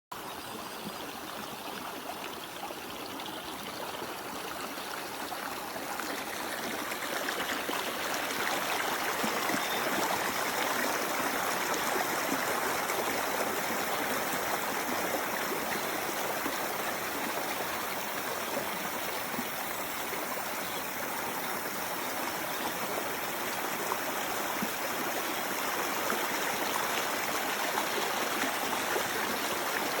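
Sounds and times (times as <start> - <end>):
stream babbling over rocks: 1.0 - 30.0.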